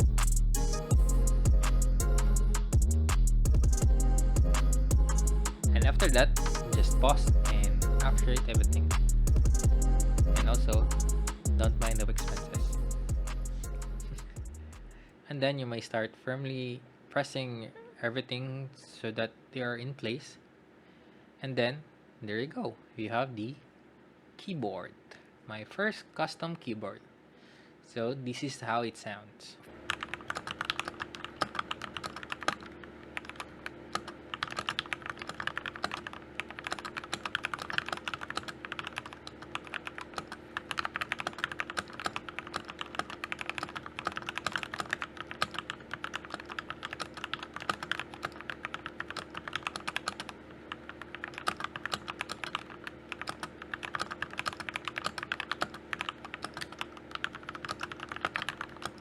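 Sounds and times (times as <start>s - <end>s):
fast typing on mechanical keyboard: 29.9s - 50.4s, 51.1s - 59.0s.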